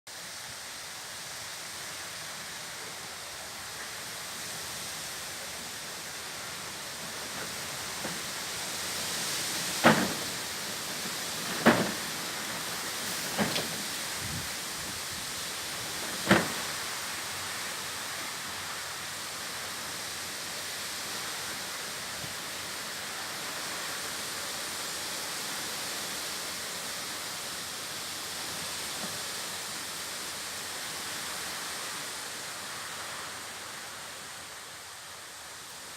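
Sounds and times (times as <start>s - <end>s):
sharp knocks: 9.6s - 13.8s, 16.1s - 16.6s
wind rushing: 9.8s - 16.4s.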